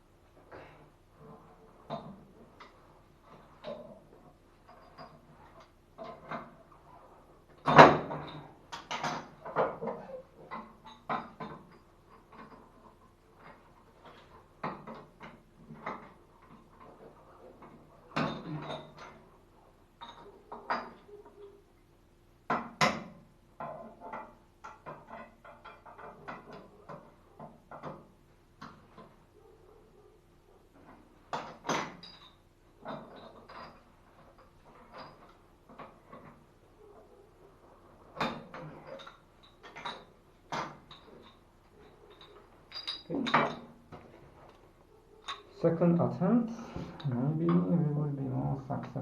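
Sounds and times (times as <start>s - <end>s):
metal tools clinking: 3.4s - 7.0s, 30.8s - 36.9s, 38.0s - 44.5s.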